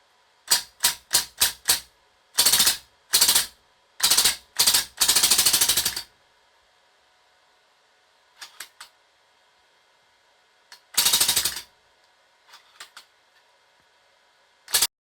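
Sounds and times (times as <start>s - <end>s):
airsoft gun full-auto burst: 2.4s - 6.0s, 11.0s - 11.6s.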